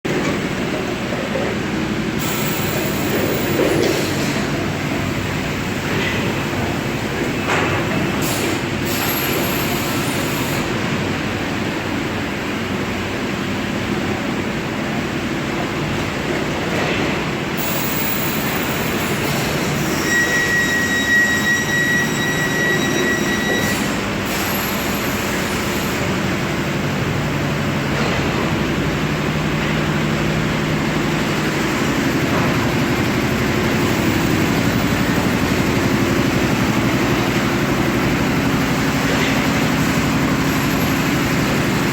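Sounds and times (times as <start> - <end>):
factory machinery rumbling: 0.1 - 41.9
high whistling tone: 19.9 - 23.8.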